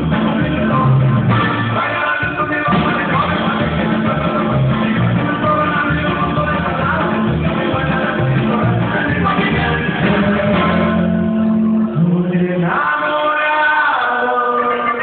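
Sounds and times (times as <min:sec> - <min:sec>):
man singing: 0:00.0 - 0:15.0.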